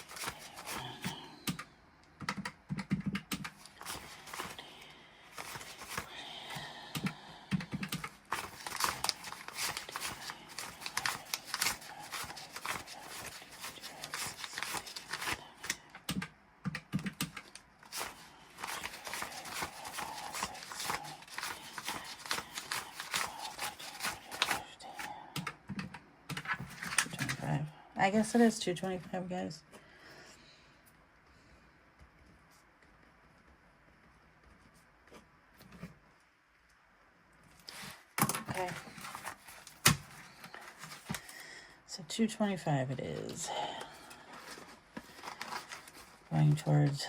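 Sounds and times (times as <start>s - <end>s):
banknotes rustling and flicking: 0.0s - 27.6s, 37.6s - 41.6s, 42.8s - 47.0s.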